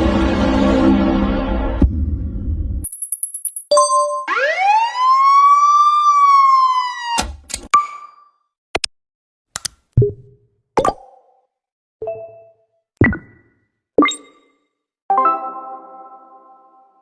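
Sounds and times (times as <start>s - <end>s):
two-note beep: 3.7s - 4.3s
rising siren-like tone: 4.2s - 7.2s
sharp clicks: 9.5s - 9.9s.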